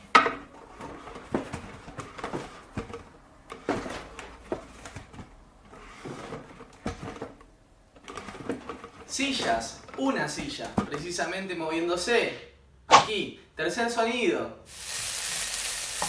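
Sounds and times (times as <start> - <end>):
chair scraping and knocking on floor: 0.0 - 7.4.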